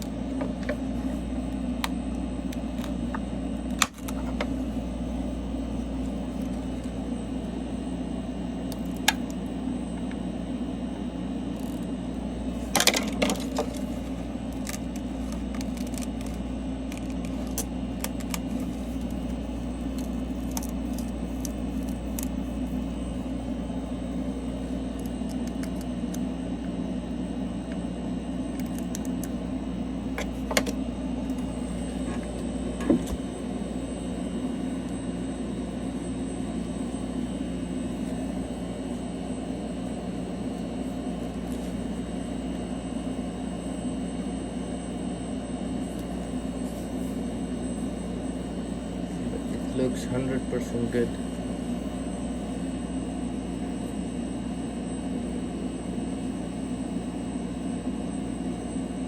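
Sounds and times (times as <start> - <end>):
low machine hum: 0.0 - 59.0.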